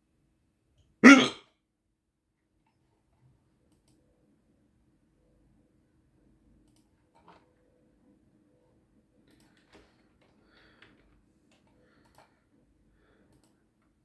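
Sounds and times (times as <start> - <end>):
person hiccuping: 1.0 - 1.4.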